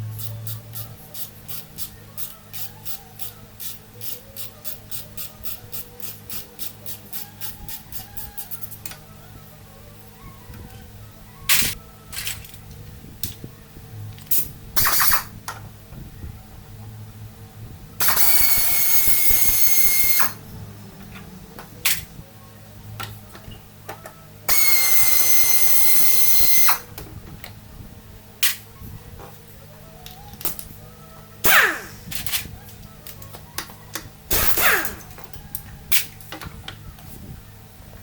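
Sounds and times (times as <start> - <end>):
power tool whining: 18.0 - 20.4, 24.5 - 26.9, 31.4 - 32.3, 34.3 - 35.2.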